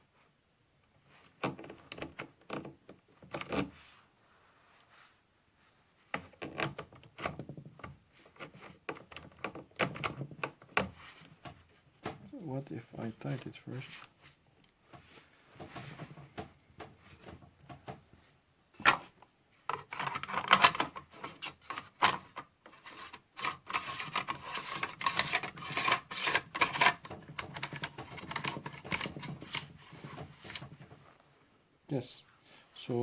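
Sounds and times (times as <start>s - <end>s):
plastic and metal parts clicking: 23.4s - 30.7s.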